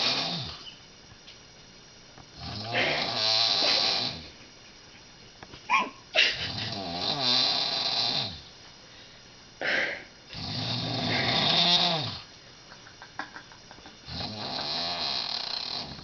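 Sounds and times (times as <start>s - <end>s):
woman snoring loudly: 0.0s - 0.6s, 2.4s - 4.3s, 6.3s - 8.4s, 9.6s - 12.3s, 14.0s - 16.0s.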